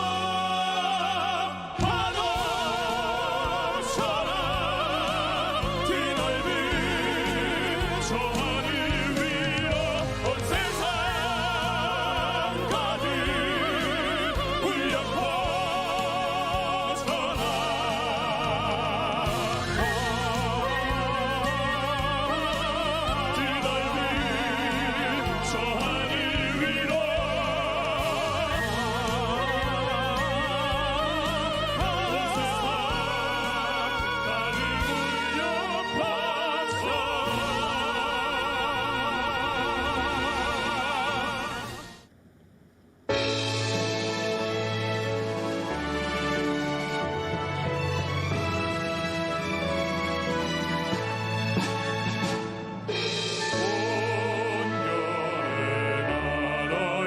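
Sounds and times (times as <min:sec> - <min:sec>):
male voices singing operatically: 0:00.0 - 0:41.9, 0:53.4 - 0:57.0
orchestral backing: 0:00.0 - 0:42.0, 0:43.1 - 0:57.0.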